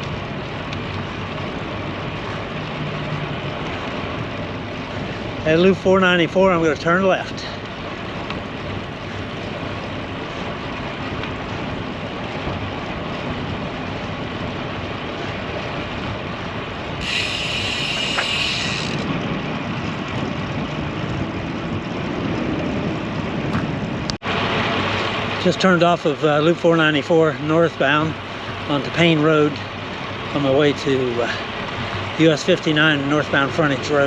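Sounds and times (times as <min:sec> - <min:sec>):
wind noise: 0:00.0 - 0:26.0
high-pitched hiss: 0:17.0 - 0:19.0.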